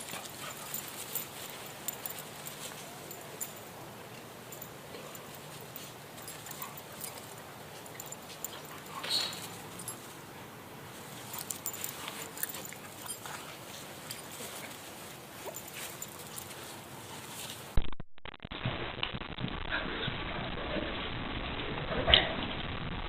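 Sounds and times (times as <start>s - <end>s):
dogs scuffling and clicking: 0.0s - 10.2s, 11.0s - 17.8s.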